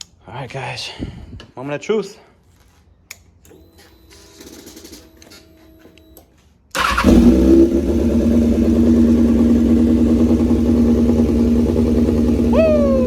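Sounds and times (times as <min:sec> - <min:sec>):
motorcycle engine starting and idling: 0:06.7 - 0:13.0.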